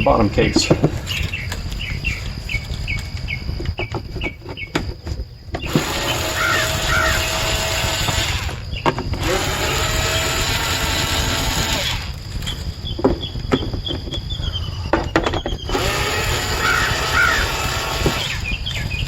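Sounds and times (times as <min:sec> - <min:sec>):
birds chirping: 0:00.0 - 0:19.0
cordless drill whirring: 0:05.6 - 0:12.6, 0:15.7 - 0:19.0.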